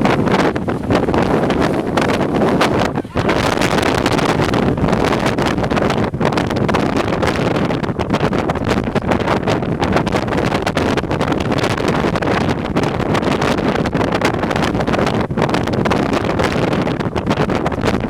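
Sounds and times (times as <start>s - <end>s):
strong wind buffeting microphone: 0.0s - 18.0s.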